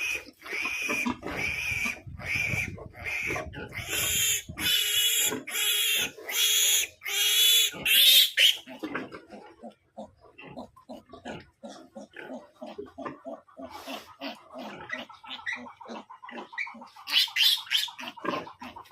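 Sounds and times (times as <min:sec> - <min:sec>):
piglet squealing: 0:00.0 - 0:08.8, 0:14.8 - 0:18.7
piglet grunts and squeaks: 0:00.0 - 0:18.9.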